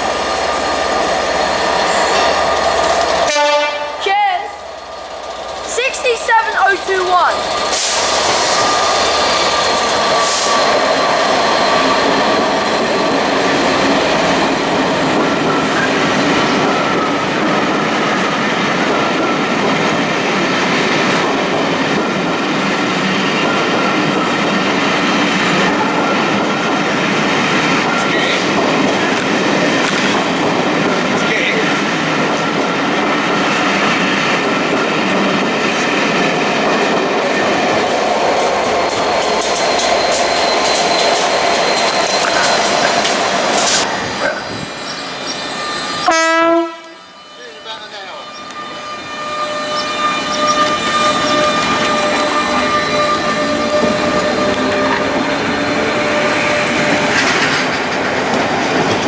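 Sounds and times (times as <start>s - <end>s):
train wheels rumbling on rails: 0.0s - 59.0s
high tone from wheels: 38.5s - 57.5s.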